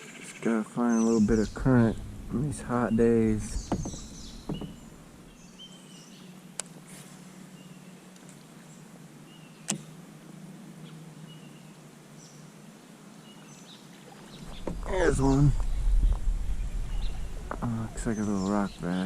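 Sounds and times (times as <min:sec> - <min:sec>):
river ambience: 0:00.0 - 0:19.0
faint bird chirps: 0:13.2 - 0:19.0.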